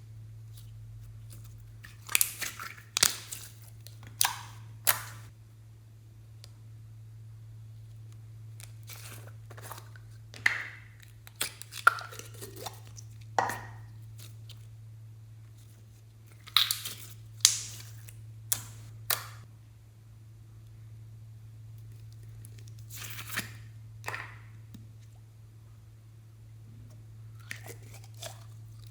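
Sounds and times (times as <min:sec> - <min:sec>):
slime popping and crackling: 0:01.4 - 0:05.3, 0:10.4 - 0:14.3, 0:16.3 - 0:19.4.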